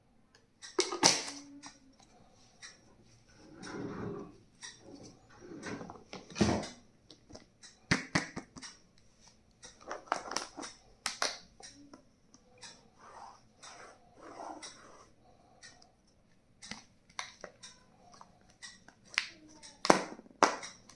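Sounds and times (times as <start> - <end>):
plastic parts clicking: 9.6 - 11.8.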